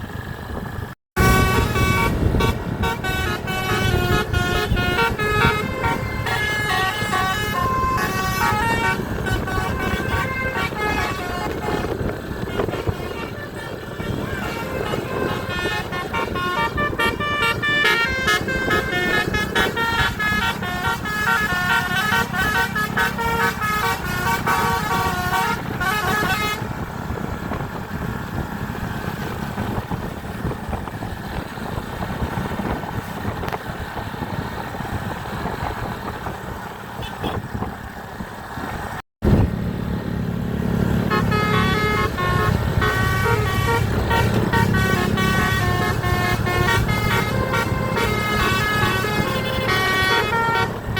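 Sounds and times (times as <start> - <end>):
vehicle and road rumble: 0.0 - 50.9
bus horn playing a melody: 1.2 - 27.4, 37.0 - 37.6, 40.8 - 50.9.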